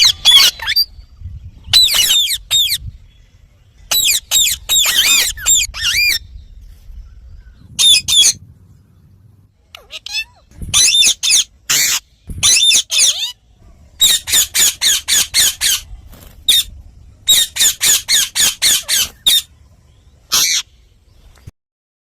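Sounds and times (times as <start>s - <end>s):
parakeet squawking: 0.0s - 0.8s, 1.8s - 2.8s, 3.9s - 6.2s, 7.8s - 8.4s, 9.7s - 13.4s, 14.0s - 15.9s, 17.3s - 19.5s, 20.3s - 20.7s.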